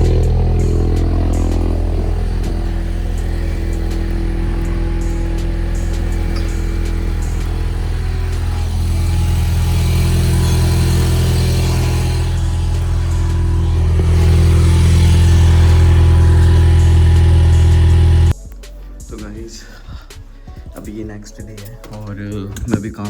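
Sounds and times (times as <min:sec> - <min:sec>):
car engine running through exhaust: 0:00.0 - 0:18.4.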